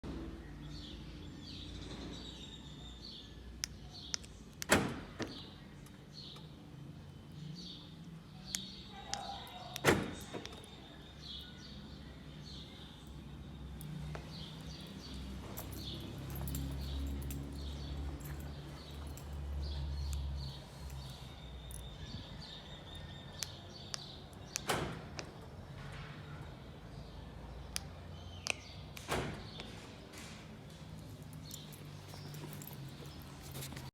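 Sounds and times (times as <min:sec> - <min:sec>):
car door locks clunking: 0:04.6 - 0:05.5, 0:09.2 - 0:10.8, 0:24.3 - 0:25.5.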